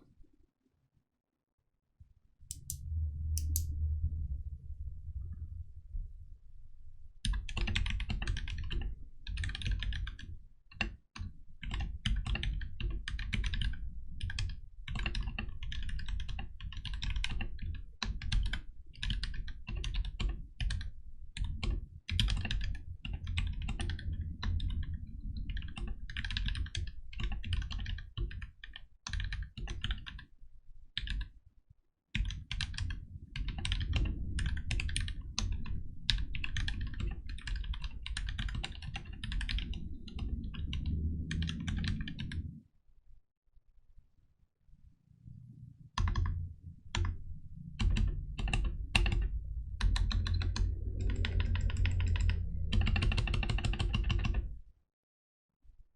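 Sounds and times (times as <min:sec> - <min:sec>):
fast typing on mechanical keyboard: 0:07.3 - 0:10.3, 0:11.6 - 0:20.8, 0:25.6 - 0:30.2, 0:32.2 - 0:35.2, 0:36.1 - 0:42.4, 0:47.8 - 0:54.4.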